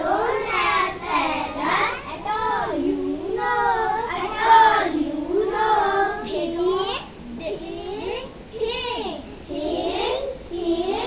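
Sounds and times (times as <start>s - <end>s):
child singing: 0.0s - 11.0s.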